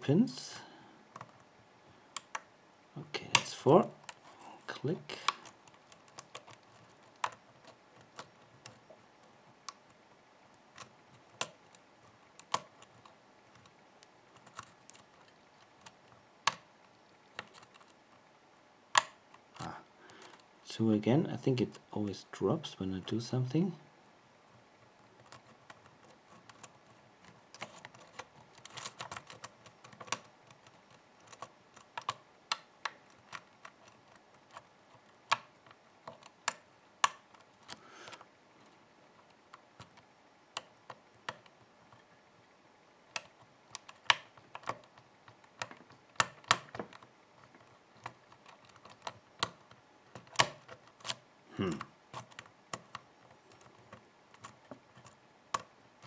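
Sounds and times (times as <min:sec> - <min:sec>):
lock pick metal clicks: 0:19.0 - 0:20.4, 0:43.1 - 0:51.2.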